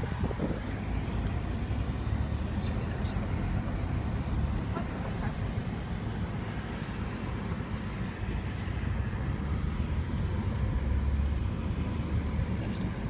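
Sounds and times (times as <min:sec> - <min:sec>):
car road and engine rumble: 0:00.0 - 0:13.0.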